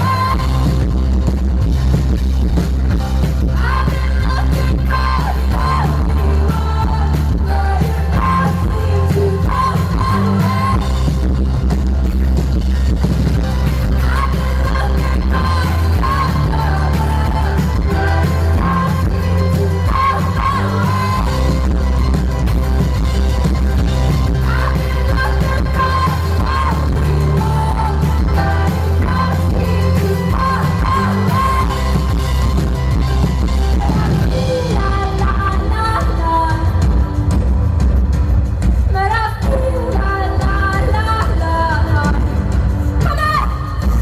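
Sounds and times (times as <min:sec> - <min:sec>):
woman singing: 0:00.0 - 0:01.1, 0:03.3 - 0:11.5, 0:13.7 - 0:22.1, 0:24.2 - 0:37.3, 0:38.9 - 0:44.0
live pop song with boomy bass: 0:00.0 - 0:44.0.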